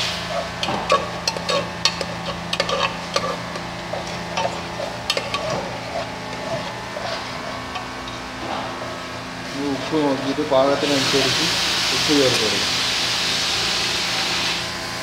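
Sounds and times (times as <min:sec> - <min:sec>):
steady low hum: 0:00.0 - 0:14.1
spoon scraping metal pot: 0:00.3 - 0:08.4.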